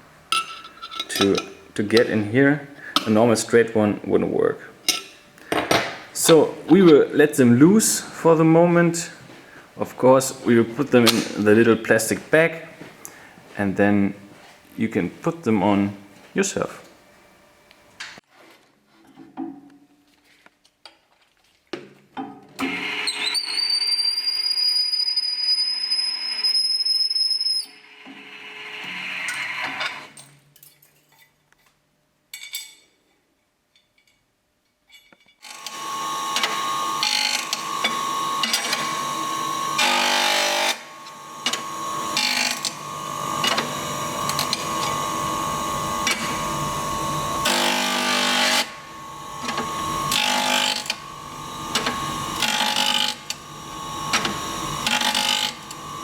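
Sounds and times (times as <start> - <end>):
electric sander whining: 35.6 - 56.0.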